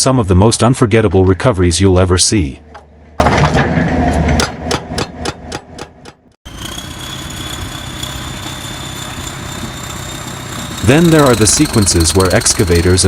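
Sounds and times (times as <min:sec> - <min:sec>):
sharp knocks: 0:02.7 - 0:06.4
engine running loudly: 0:06.5 - 0:13.0
machine drone with high whine: 0:06.5 - 0:13.0.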